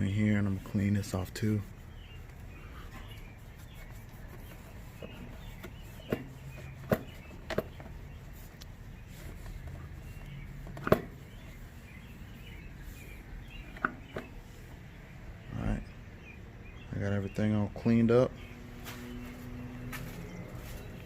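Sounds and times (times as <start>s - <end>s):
steady low hum: 0.0s - 21.0s
sharp clicks and knocks: 5.0s - 8.0s, 10.6s - 11.2s, 13.7s - 14.4s.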